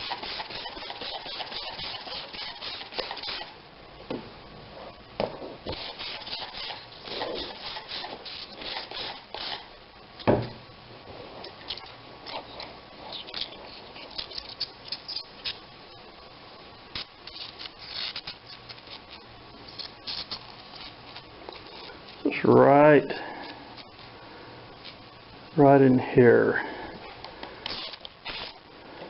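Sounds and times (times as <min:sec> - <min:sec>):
hands rubbing rubber inner tube: 0:00.0 - 0:03.5, 0:05.7 - 0:09.2.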